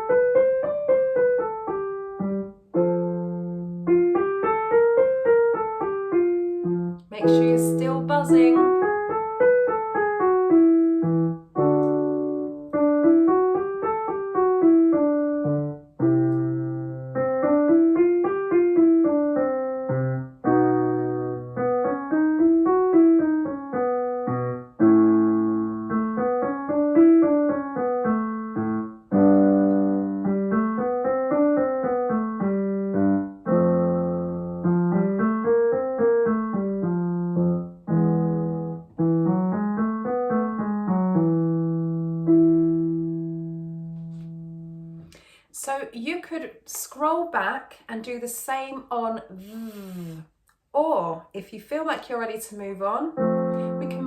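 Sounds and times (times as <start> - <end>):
piano chord: 0.0 - 45.2, 53.1 - 54.0
piano scale runs: 2.2 - 44.9.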